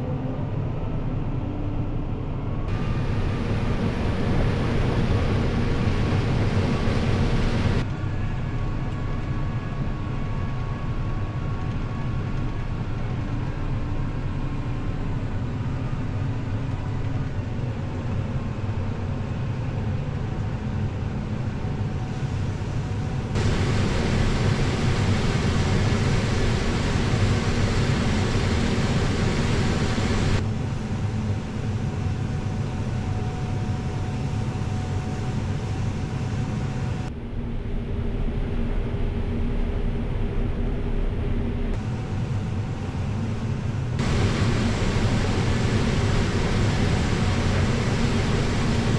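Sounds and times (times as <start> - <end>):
harvest machinery engine hum: 2.7 - 7.8, 23.4 - 30.4, 44.0 - 48.9.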